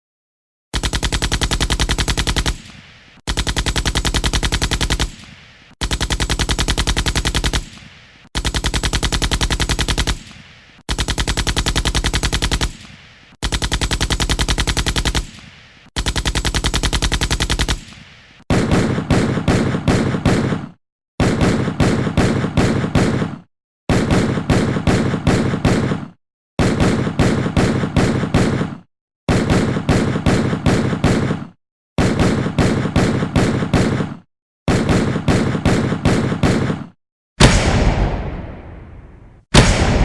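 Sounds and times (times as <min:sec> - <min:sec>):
machine-gun bursts: 0:00.8 - 0:20.3
separate gunshots: 0:00.8 - 0:40.0.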